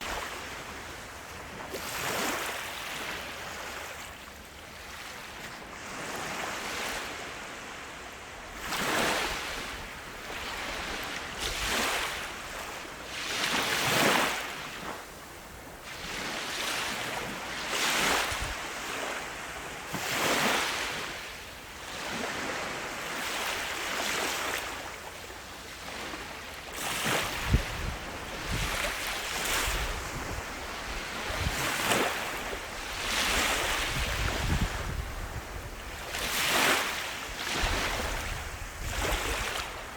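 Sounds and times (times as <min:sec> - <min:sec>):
ocean waves breaking: 0:21.9 - 0:39.9
wind buffeting microphone: 0:27.2 - 0:36.2, 0:37.5 - 0:39.9.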